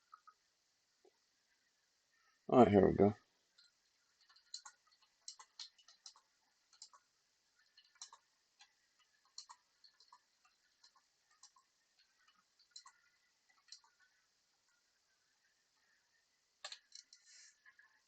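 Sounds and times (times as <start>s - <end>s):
faint typing clicks: 3.5s - 14.9s, 16.6s - 18.0s.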